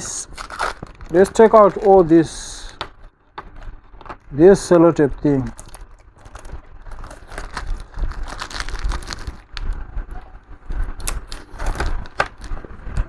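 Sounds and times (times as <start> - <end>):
tape being peeled off: 0.2 - 4.2.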